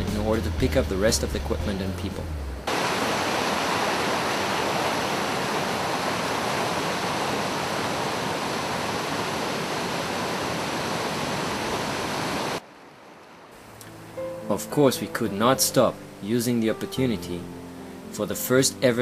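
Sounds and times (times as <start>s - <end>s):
rushing river water: 2.6s - 16.3s.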